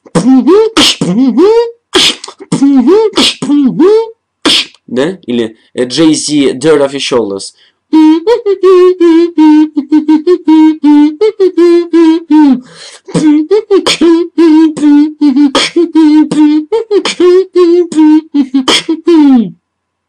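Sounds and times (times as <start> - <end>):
beatboxed kick and snare: 0.0 - 1.2, 2.0 - 3.6, 4.4 - 4.8, 15.6 - 15.8
buzzy hummed notes: 0.0 - 20.0.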